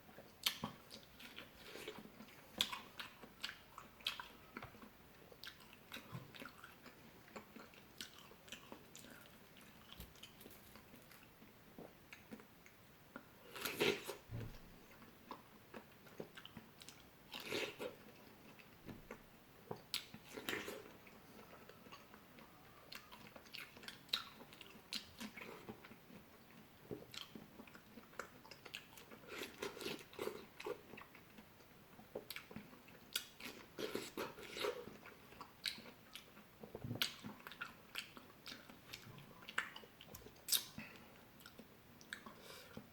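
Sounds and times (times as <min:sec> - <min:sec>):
person biting and chewing fruit: 0:32.1 - 0:39.0.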